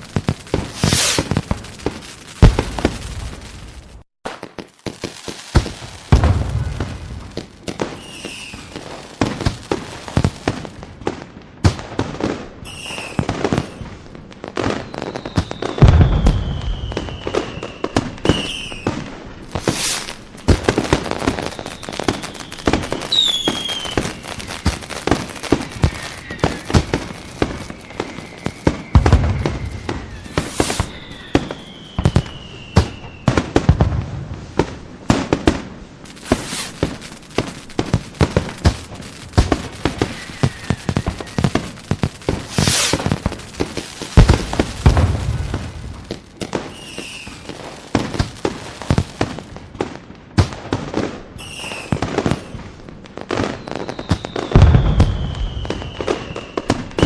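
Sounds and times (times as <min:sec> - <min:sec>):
deep firework booms: 0:00.0 - 0:57.0
fireworks bangs and crackling: 0:00.0 - 0:57.0
whistles falling in pitch: 0:08.0 - 0:08.7, 0:12.7 - 0:13.3, 0:14.9 - 0:18.9, 0:21.5 - 0:24.8, 0:25.6 - 0:33.3, 0:39.9 - 0:41.6, 0:46.7 - 0:47.5, 0:51.4 - 0:52.5, 0:53.5 - 0:57.0.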